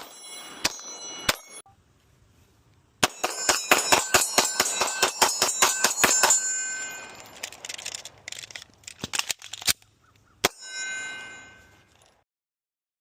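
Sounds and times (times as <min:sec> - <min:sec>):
metallic ringing: 0:00.0 - 0:01.7, 0:03.0 - 0:07.6, 0:10.4 - 0:12.2.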